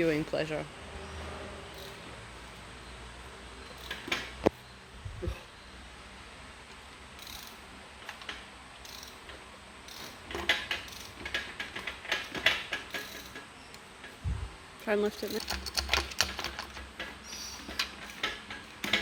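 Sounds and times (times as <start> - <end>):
hand tools clicking on metal: 15.2 - 19.0.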